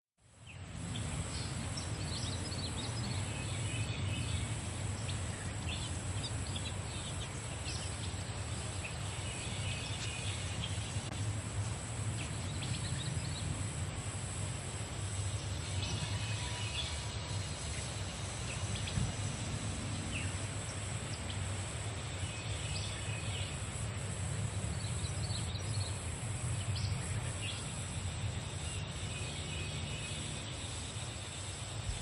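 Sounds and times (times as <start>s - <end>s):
high-pitched hiss: 0.2s - 32.0s
birds chirping: 0.5s - 13.7s.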